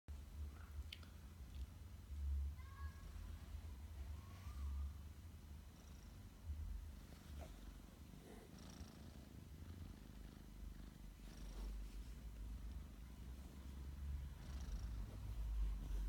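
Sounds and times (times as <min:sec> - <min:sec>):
cat snoring softly: 0:05.7 - 0:16.0.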